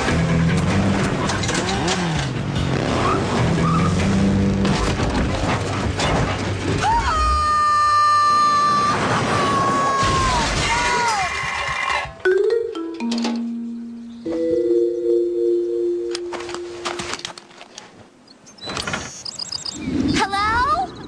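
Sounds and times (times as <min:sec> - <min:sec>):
vehicle engine sound effects: 0:00.0 - 0:06.6.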